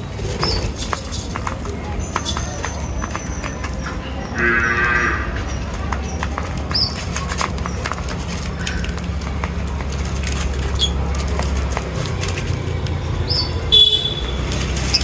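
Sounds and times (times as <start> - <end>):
bird chirps: 13.2 - 15.0.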